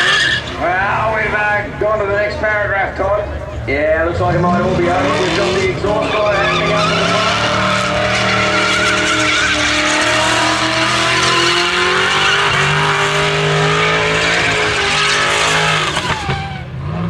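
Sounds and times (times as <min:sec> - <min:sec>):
tyres squealing: 0:00.0 - 0:01.2, 0:04.8 - 0:16.7
car engine at high revs: 0:04.0 - 0:17.0.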